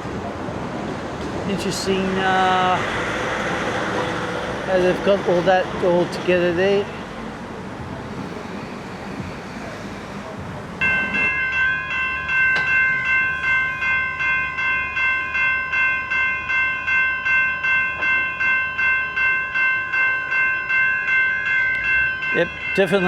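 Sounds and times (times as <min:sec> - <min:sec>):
low rumble of surroundings: 0:00.0 - 0:16.6
level crossing warning bells: 0:00.6 - 0:23.0.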